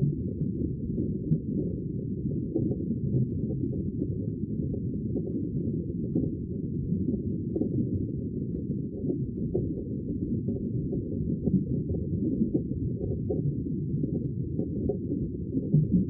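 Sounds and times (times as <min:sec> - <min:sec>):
muffled sea rumble: 0:04.9 - 0:16.0.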